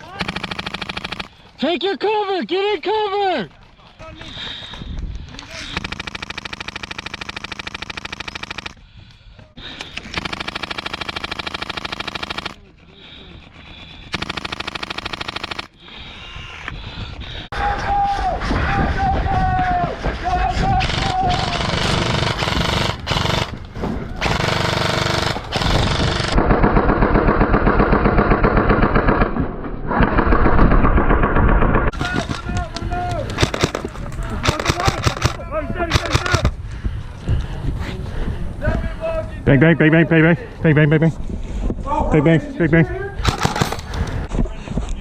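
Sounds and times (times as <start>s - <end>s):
airsoft guns firing full-auto: 0.0s - 1.3s, 5.6s - 8.8s, 10.0s - 12.6s, 14.1s - 15.8s, 20.8s - 23.6s, 24.2s - 29.3s, 33.2s - 36.6s, 43.2s - 44.1s
airsoft rifle firing full auto: 0.0s - 1.3s, 10.1s - 12.6s, 14.1s - 15.7s, 33.4s - 36.5s, 43.2s - 43.9s.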